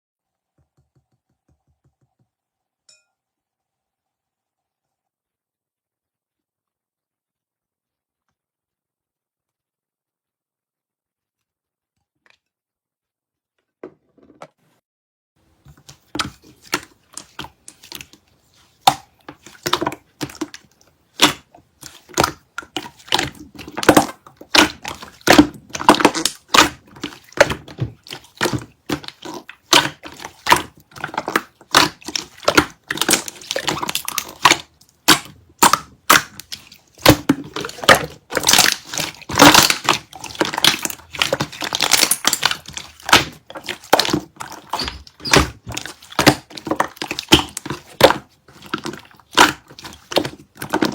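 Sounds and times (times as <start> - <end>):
slime squishing with sticky clicks: 15.8 - 50.9
slime air bubbles popping: 22.1 - 50.9.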